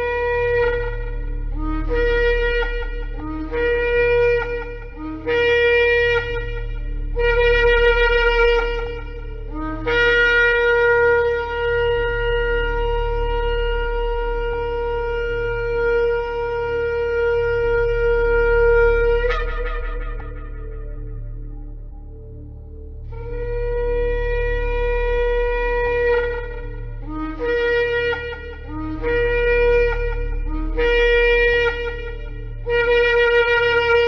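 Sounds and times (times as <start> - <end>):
shofar blasts: 0.0 - 22.2, 23.1 - 34.0.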